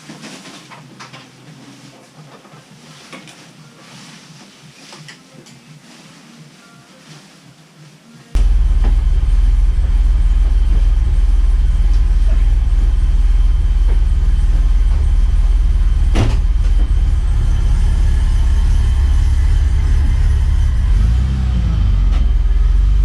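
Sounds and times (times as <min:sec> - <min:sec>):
car engine rumbling: 0:08.4 - 0:23.0.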